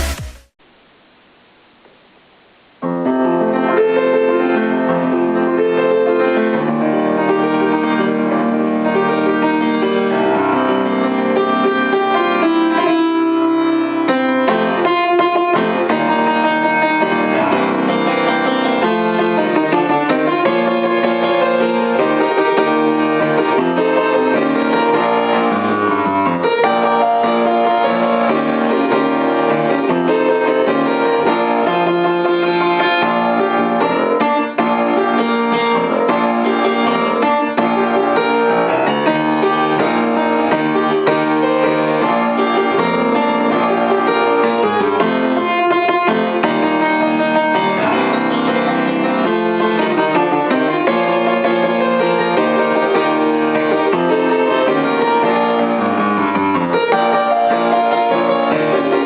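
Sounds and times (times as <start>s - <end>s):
faint hiss: 0.0s - 3.5s
dull piano music: 2.8s - 59.0s.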